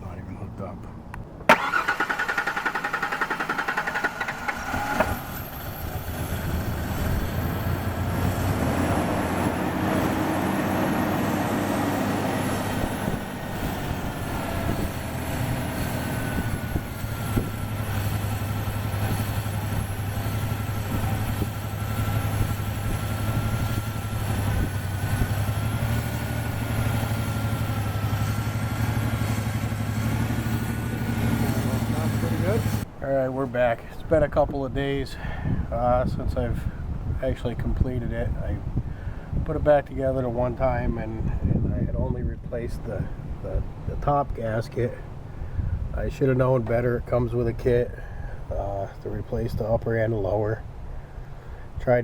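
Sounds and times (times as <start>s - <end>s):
engine running steadily: 0.0s - 52.0s
engine starter cranking: 1.5s - 5.8s.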